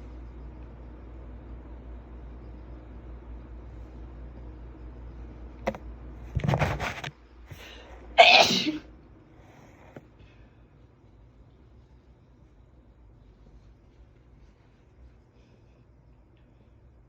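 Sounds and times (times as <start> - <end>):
woman sneezing: 8.2 - 8.8.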